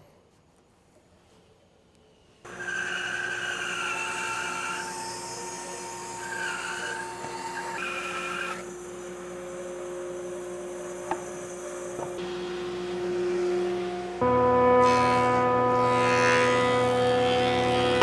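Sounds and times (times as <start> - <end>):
bandsaw cutting wood: 2.5 - 14.2.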